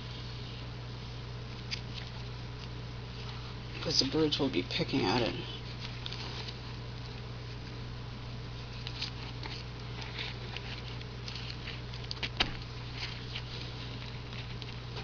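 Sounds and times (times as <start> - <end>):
low electrical hum: 0.0 - 15.0
netting rustling and clicking: 8.7 - 15.0.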